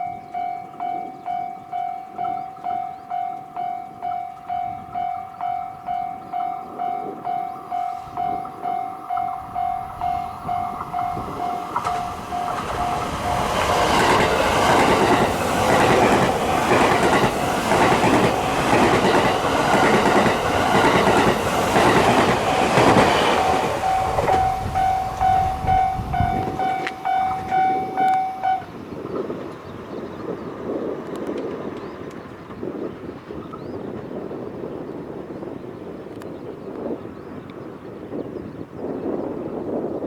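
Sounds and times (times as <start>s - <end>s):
level-crossing warning bell: 0.0s - 30.9s
train passing: 0.0s - 35.6s.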